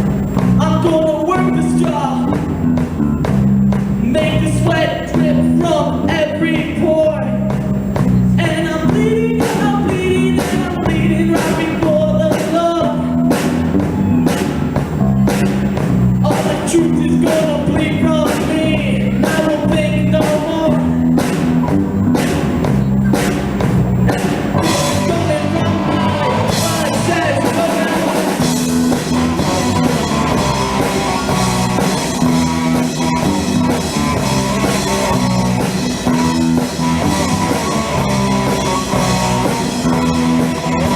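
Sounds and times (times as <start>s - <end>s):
bass guitar: 0.0s - 40.9s
drum kit: 0.0s - 40.9s
electric guitar: 0.0s - 40.9s
man singing: 0.6s - 2.4s, 4.0s - 7.5s, 8.4s - 13.2s, 16.2s - 21.0s, 24.6s - 28.6s.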